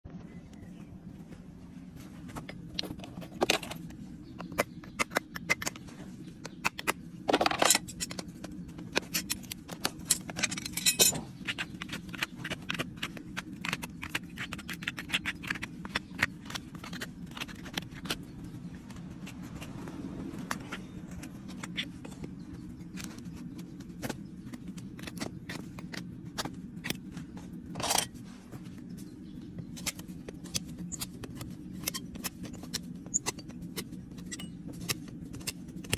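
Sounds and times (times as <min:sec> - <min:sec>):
steady low hum: 0:00.1 - 0:35.9
metal tools clicking and snipping: 0:06.4 - 0:08.3, 0:08.9 - 0:18.3, 0:27.7 - 0:28.1, 0:29.8 - 0:35.9
scraping strokes on hoof: 0:29.9 - 0:35.9.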